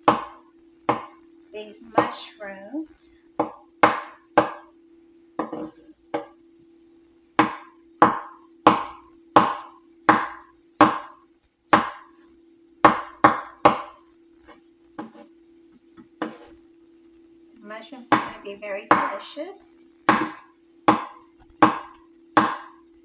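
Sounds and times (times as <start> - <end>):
knife chopping on cutting board: 0.1 - 1.1, 3.4 - 4.7, 11.8 - 12.1, 12.9 - 15.3, 18.1 - 19.1, 20.1 - 22.8.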